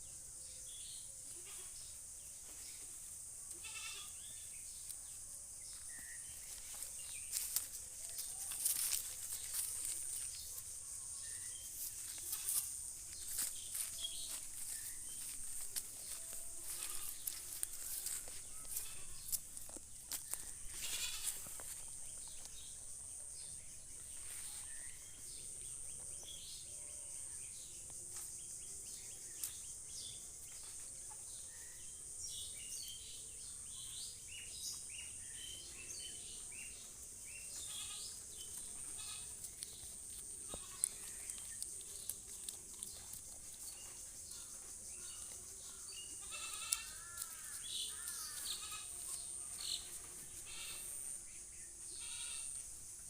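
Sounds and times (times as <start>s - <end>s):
goat bleating: 3.6s - 4.2s, 16.6s - 17.4s, 18.6s - 19.2s, 20.7s - 21.5s, 38.8s - 39.4s, 40.5s - 41.1s, 46.2s - 47.0s, 48.4s - 49.1s, 50.4s - 50.9s.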